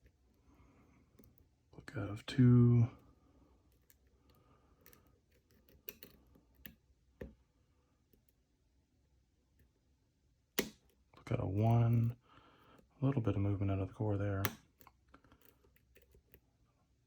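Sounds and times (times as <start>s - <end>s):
lock pick clicking: 4.8s - 6.8s.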